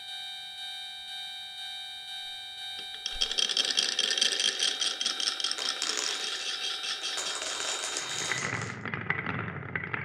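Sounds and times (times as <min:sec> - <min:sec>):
glass marbles clattering on track: 0:02.8 - 0:10.0.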